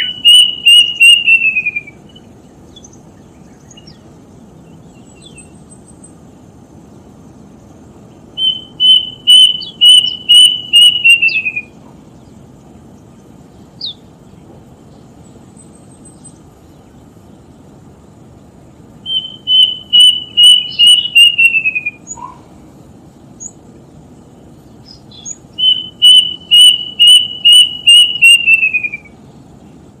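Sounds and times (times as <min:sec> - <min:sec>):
bird whistling: 0:00.0 - 0:04.0, 0:04.9 - 0:05.8, 0:08.4 - 0:11.9, 0:13.8 - 0:14.0, 0:19.0 - 0:22.4, 0:24.8 - 0:29.2.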